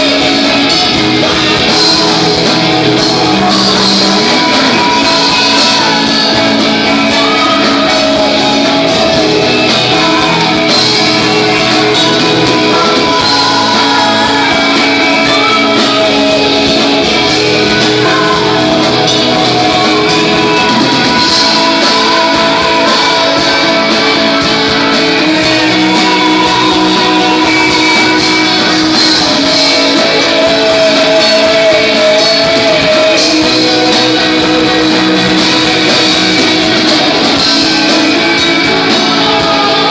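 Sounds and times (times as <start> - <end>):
guitars: 0.0 - 39.9
live rock band playing: 0.0 - 39.9.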